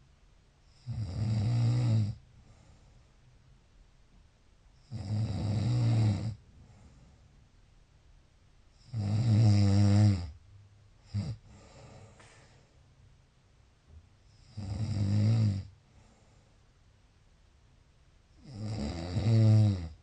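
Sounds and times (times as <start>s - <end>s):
person snoring: 0.7s - 2.2s, 4.8s - 6.4s, 8.8s - 10.3s, 14.4s - 15.7s, 18.4s - 20.0s
faint breathing: 2.3s - 3.3s, 6.5s - 7.4s, 11.3s - 12.9s, 15.8s - 16.7s.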